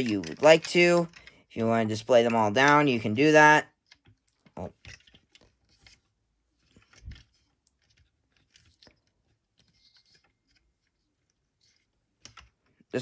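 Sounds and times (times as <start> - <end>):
hard plastic parts clicking: 0.0 - 6.0, 12.2 - 12.7.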